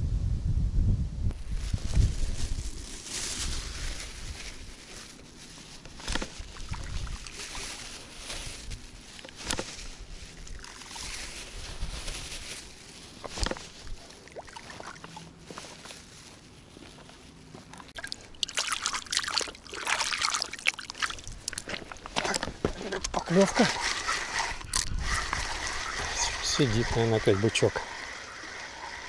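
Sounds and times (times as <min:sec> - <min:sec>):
river water sloshing over stones: 0:06.1 - 0:08.3, 0:10.2 - 0:11.6, 0:13.2 - 0:15.2, 0:17.8 - 0:22.1.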